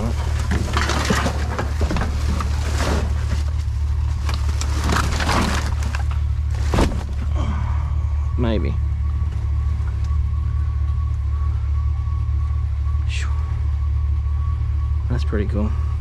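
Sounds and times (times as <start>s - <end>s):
debris crunching and scraping: 0.0s - 7.4s
steady low hum: 0.0s - 16.0s.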